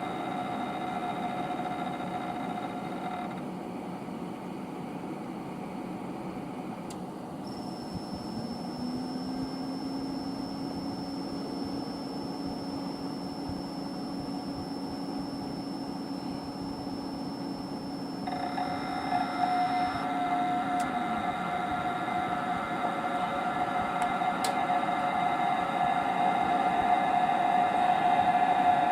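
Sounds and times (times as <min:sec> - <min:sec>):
fan motor whine and hum: 0:00.0 - 0:28.9
multi-tone buzzing: 0:07.4 - 0:28.9
fan click: 0:24.0 - 0:24.6.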